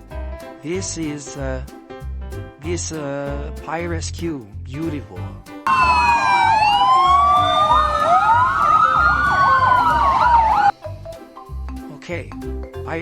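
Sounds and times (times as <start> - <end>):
siren fast warbling yelp: 5.7 - 10.7
sirens wailing: 5.7 - 10.7.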